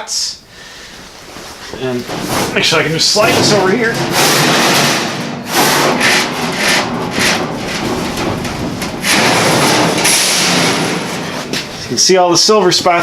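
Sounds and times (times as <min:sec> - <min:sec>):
steel panel scraping across metal: 0:02.1 - 0:13.0.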